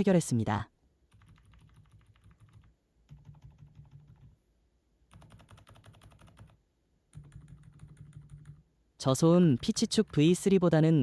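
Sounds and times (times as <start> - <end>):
faint keyboard typing: 1.0 - 4.4, 5.1 - 8.7, 9.4 - 10.5.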